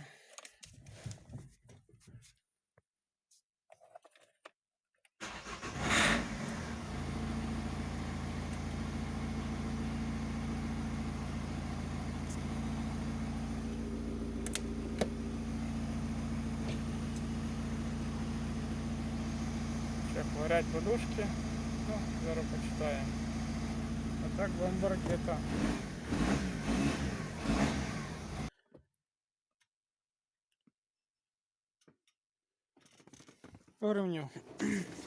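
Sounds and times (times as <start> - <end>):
diesel engine starting and idling: 5.2 - 28.5.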